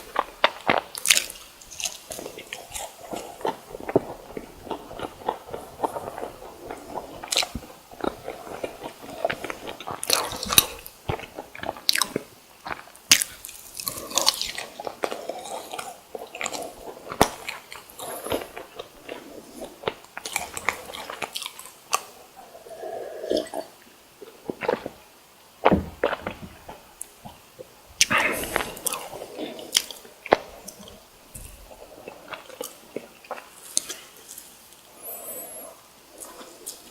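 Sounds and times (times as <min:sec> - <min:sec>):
crunching fried food: 0:00.0 - 0:25.0
soft squishy chewing: 0:00.0 - 0:25.0, 0:25.6 - 0:36.9.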